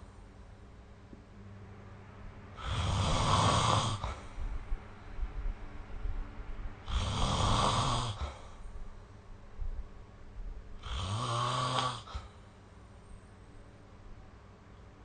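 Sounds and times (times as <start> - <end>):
person snoring: 2.6 - 4.4, 6.9 - 8.6, 10.8 - 12.4.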